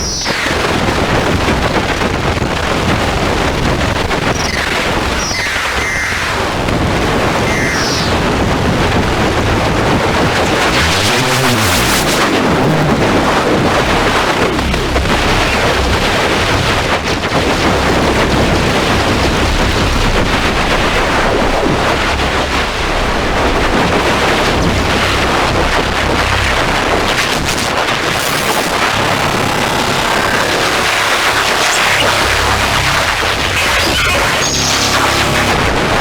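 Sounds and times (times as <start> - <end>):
distorted static noise music: 0.0 - 36.0.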